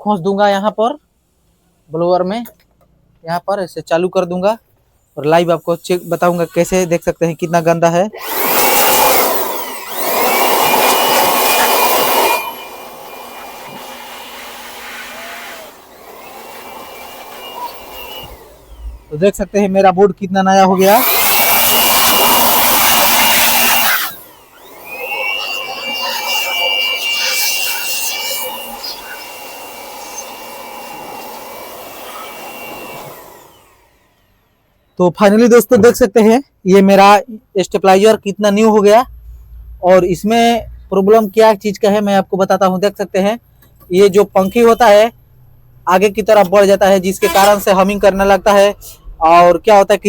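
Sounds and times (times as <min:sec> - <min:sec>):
electric air blower whining: 0:08.2 - 0:19.6, 0:20.8 - 0:34.4, 0:46.3 - 0:49.0.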